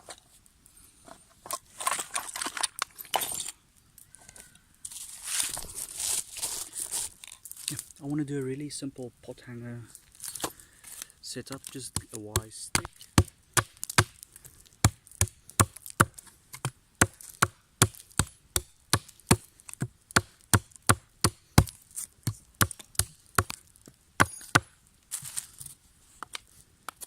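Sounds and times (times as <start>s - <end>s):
blade chopping wooden stick: 11.7s - 14.2s, 14.8s - 23.6s.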